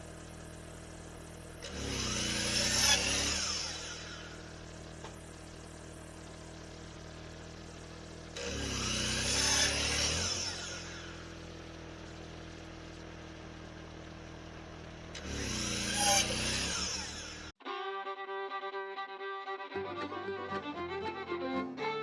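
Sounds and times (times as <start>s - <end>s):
sawmill engine running: 0.0s - 17.6s
saw blade cutting log: 1.6s - 5.2s, 8.4s - 11.5s, 15.2s - 17.5s.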